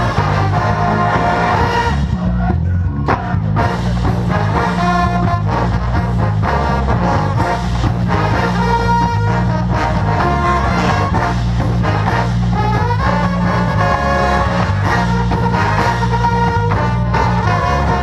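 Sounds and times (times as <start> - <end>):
marching band playing: 0.0 - 18.0.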